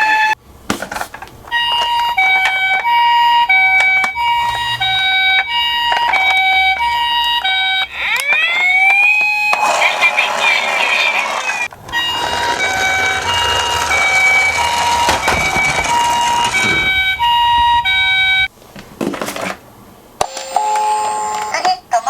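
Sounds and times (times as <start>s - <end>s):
toy two-tone siren: 1.6s - 18.5s
short rattle: 11.7s - 18.5s.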